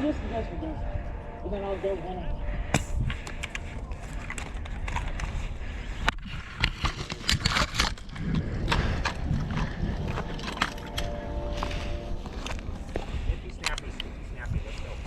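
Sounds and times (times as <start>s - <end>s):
wind on microphone: 0.0s - 15.0s
gear rattling and clicking: 2.8s - 11.2s
footsteps: 6.2s - 15.0s.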